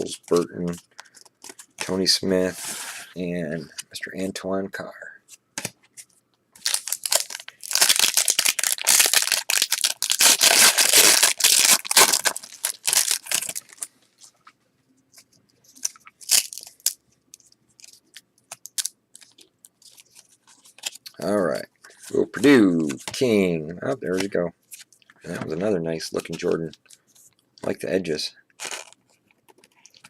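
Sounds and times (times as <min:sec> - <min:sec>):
wrapper tearing and crackling: 0:06.6 - 0:13.9, 0:15.8 - 0:17.0, 0:17.8 - 0:21.0, 0:28.6 - 0:29.1.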